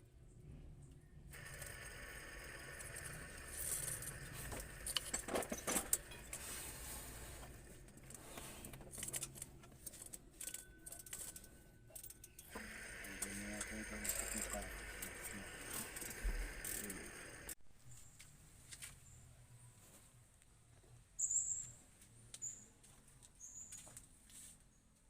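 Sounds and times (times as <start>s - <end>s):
faint low hum: 0.0s - 21.1s
metallic clinking and rattling: 1.4s - 17.6s.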